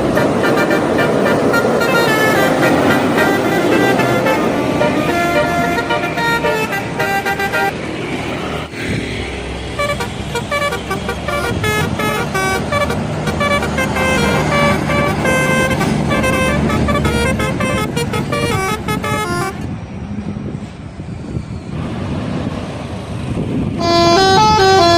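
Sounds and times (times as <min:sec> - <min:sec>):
bus horn playing a tune: 0:00.0 - 0:07.7, 0:09.8 - 0:19.7, 0:23.8 - 0:24.9
bus engine rumble: 0:00.0 - 0:24.9
road noise: 0:00.0 - 0:24.9.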